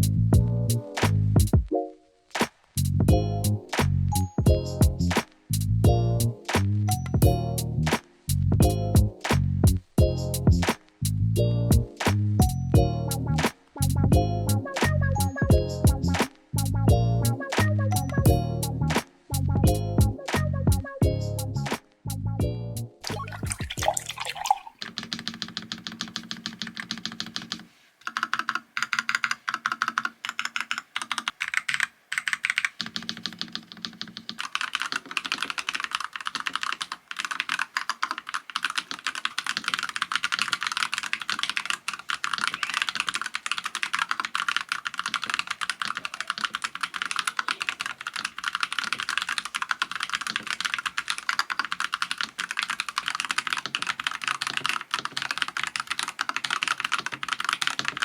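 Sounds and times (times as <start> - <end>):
mechanical keyboard typing: 24.8 - 58.0.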